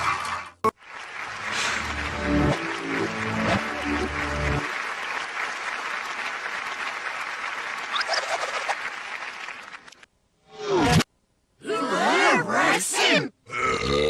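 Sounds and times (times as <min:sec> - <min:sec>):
audience applauding: 0:00.0 - 0:10.1
song: 0:01.5 - 0:04.8.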